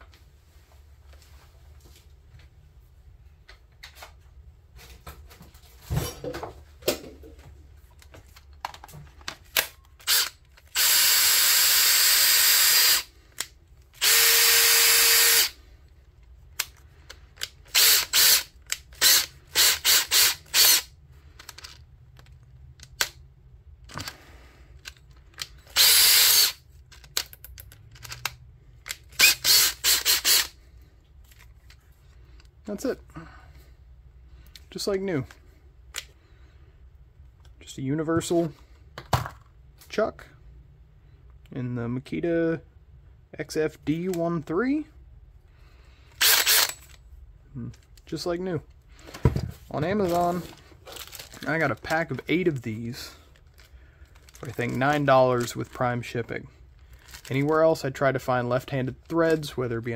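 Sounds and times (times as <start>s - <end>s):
cordless drill running: 10.0s - 13.1s, 14.0s - 15.6s, 17.7s - 20.9s, 25.7s - 26.6s, 29.2s - 30.6s, 46.2s - 46.8s.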